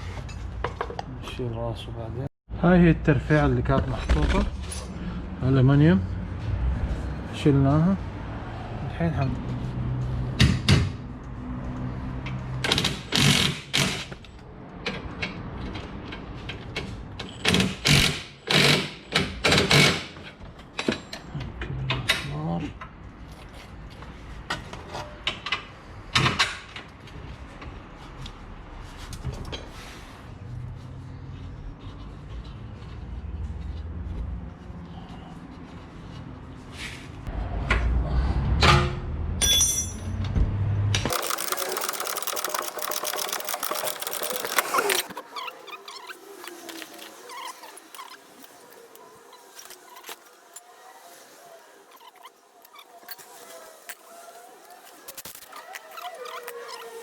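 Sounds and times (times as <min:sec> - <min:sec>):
metal tools clanking and scraping: 0:39.4 - 0:40.2
short metallic ring: 0:39.4 - 0:40.2
impact wrench bursts: 0:41.1 - 0:48.6.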